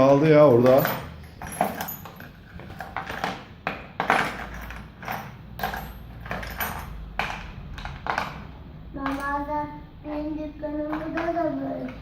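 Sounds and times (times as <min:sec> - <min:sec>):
hand tools clattering: 0:00.5 - 0:09.3.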